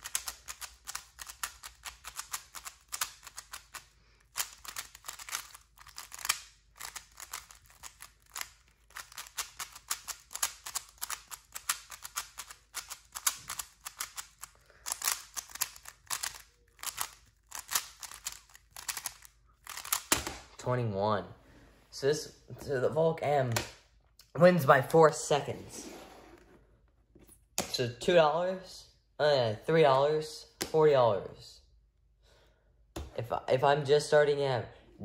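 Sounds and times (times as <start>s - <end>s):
speed cube clicking turns: 0.0s - 20.2s.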